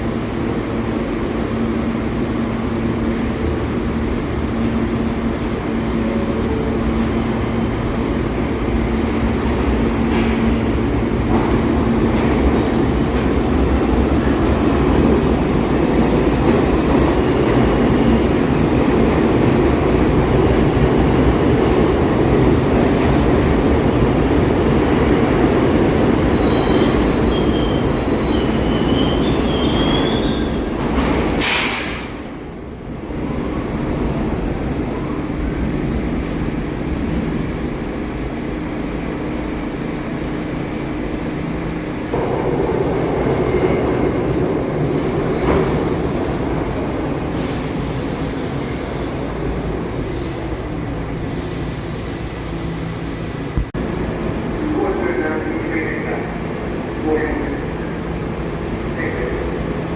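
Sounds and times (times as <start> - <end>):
subway train rumbling on rails: 0.0 - 59.9
high wheel squeal: 26.3 - 31.9.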